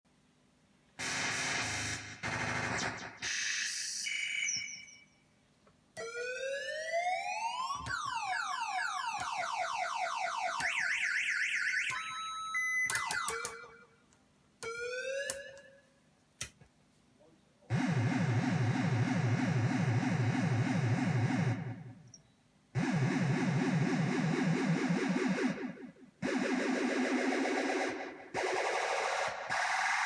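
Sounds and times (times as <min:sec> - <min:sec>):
siren sweeps: 0:06.0 - 0:13.9, 0:14.6 - 0:15.8, 0:22.8 - 0:30.0.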